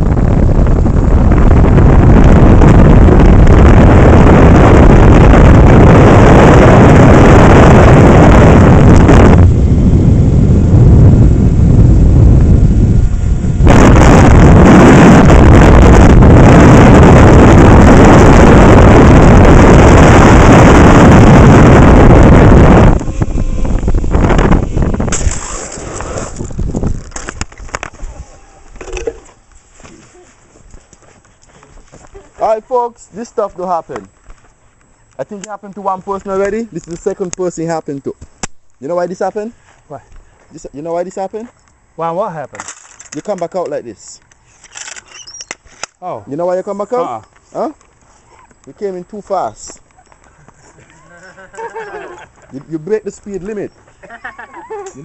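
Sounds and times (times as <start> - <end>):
wind buffeting microphone: 0.0 - 29.5.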